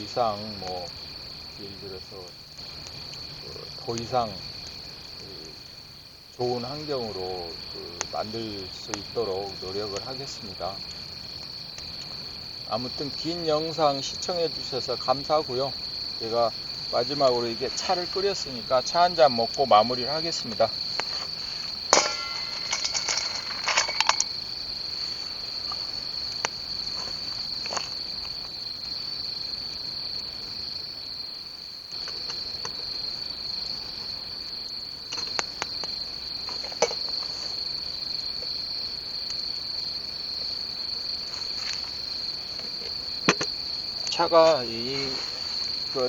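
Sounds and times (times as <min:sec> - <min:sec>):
crickets chirping: 0:00.0 - 0:46.0
clicks and knocks: 0:21.9 - 0:24.4.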